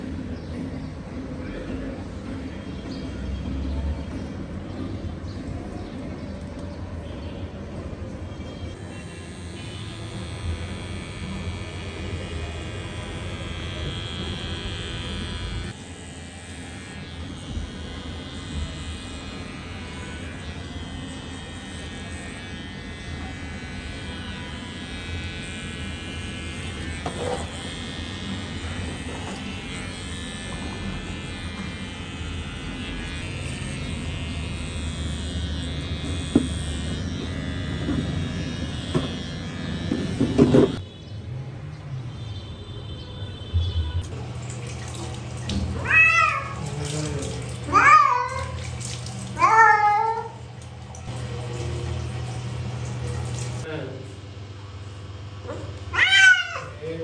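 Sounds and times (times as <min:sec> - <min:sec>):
electric hair clipper running: 0:08.7 - 0:40.8, 0:44.0 - 0:54.2.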